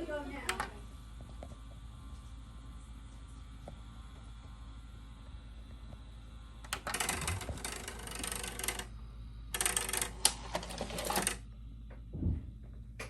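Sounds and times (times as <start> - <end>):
mains hum: 0.0 - 13.0
tape mechanism clattering and whirring: 6.6 - 8.9, 9.5 - 11.5
low thump: 12.1 - 12.5.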